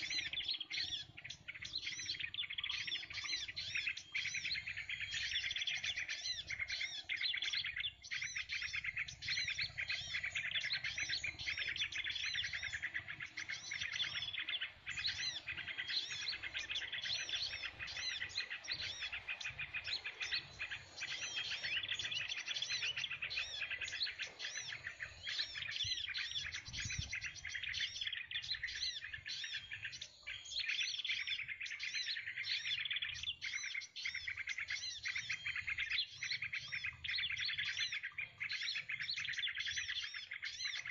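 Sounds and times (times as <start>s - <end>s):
small birds chirping: 0.0s - 40.9s.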